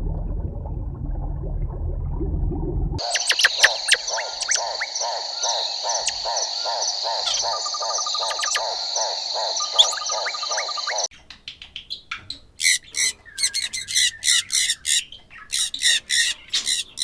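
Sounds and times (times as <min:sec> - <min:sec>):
shrill chirps: 0:03.0 - 0:06.5, 0:07.2 - 0:11.1, 0:12.5 - 0:17.0
frogs croaking: 0:03.0 - 0:11.1, 0:12.5 - 0:17.0.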